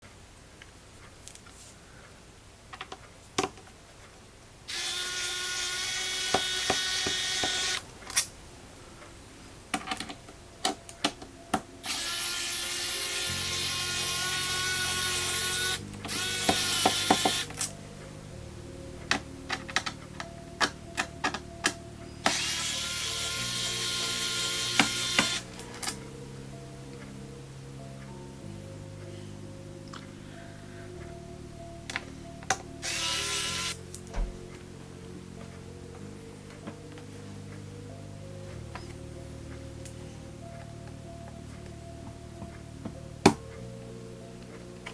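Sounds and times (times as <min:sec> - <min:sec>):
low background music: 0:03.1 - 0:44.9
electric screwdriver whirring: 0:04.7 - 0:07.8, 0:11.8 - 0:17.6, 0:22.3 - 0:25.5, 0:32.8 - 0:33.8.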